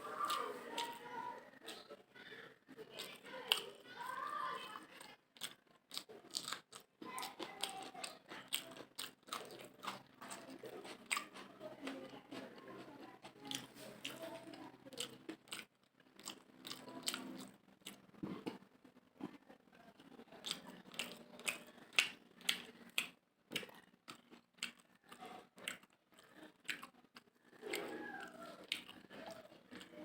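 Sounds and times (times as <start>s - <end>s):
wet chewing and lip smacks: 4.9s - 14.2s, 14.9s - 18.6s, 20.1s - 30.0s.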